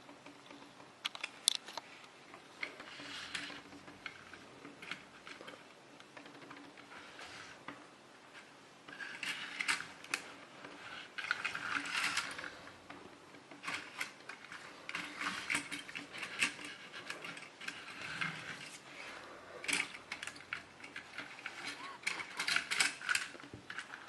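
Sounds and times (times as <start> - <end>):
plastic toys clicking and rattling: 0.0 - 24.0.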